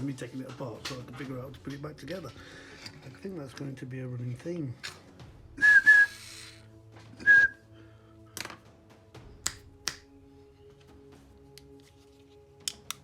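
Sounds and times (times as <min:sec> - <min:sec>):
person whistling: 0:05.6 - 0:06.6, 0:07.2 - 0:07.6.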